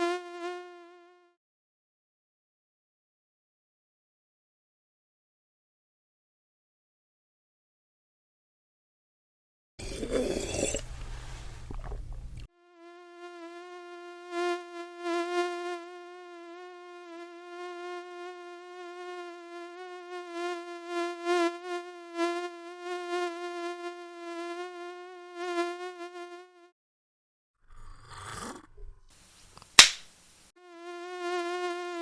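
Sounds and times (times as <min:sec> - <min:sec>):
mosquito buzzing: 0:00.0 - 0:01.4, 0:12.4 - 0:26.8, 0:30.5 - 0:32.0.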